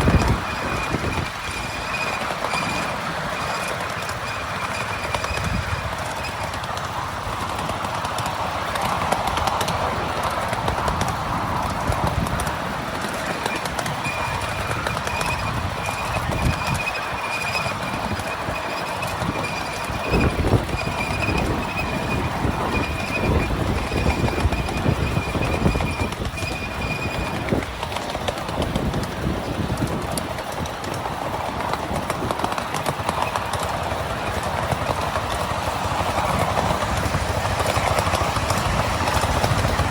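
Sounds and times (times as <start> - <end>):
high-pitched squeal: 0.0 - 6.5, 13.2 - 27.6
miniature train wheels on rail joints: 0.0 - 39.9.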